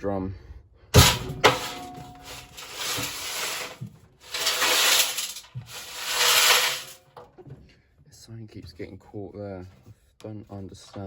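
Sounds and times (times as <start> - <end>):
washing machine drum scraping: 1.0 - 7.1.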